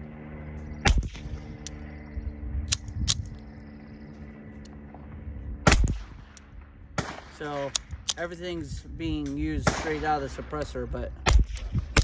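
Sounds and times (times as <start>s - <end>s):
suppressed pistol shots: 5.6s - 8.2s, 9.2s - 10.3s, 11.2s - 12.0s.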